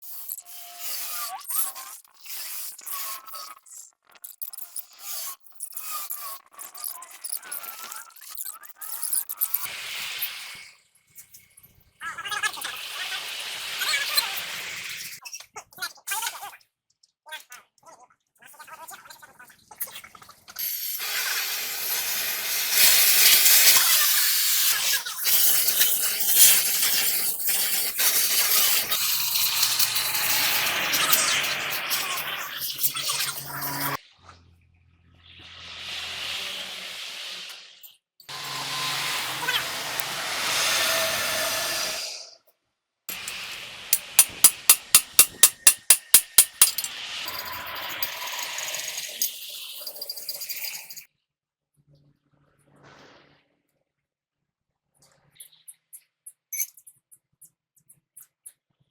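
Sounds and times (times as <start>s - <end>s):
pressurised spray hissing: 21.0s - 24.7s, 25.3s - 33.9s, 43.1s - 46.9s
hammer blows: 43.1s - 46.9s.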